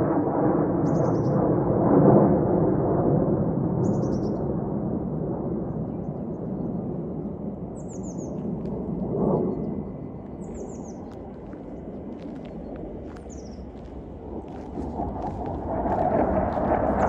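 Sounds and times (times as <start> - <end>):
small bird chirping: 7.8 - 8.8, 10.4 - 13.9
low rushing noise: 11.0 - 17.0.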